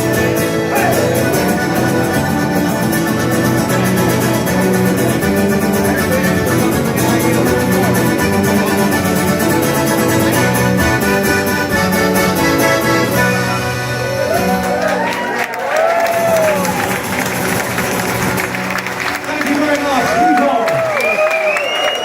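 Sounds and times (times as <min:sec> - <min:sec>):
live band music: 0:00.0 - 0:21.5
audience whooping: 0:14.0 - 0:22.0.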